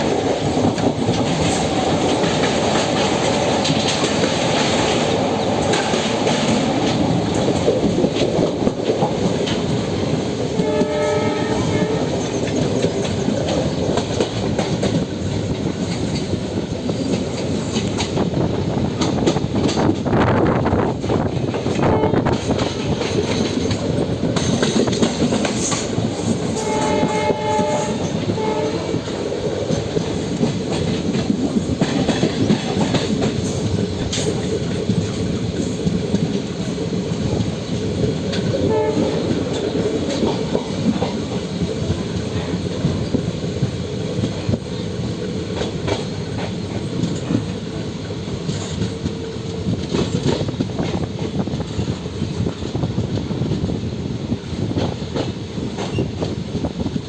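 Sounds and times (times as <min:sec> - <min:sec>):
train rolling rumble: 0:00.0 - 0:57.0
train horn: 0:10.6 - 0:12.4, 0:21.6 - 0:22.6, 0:26.5 - 0:29.2, 0:38.5 - 0:40.0.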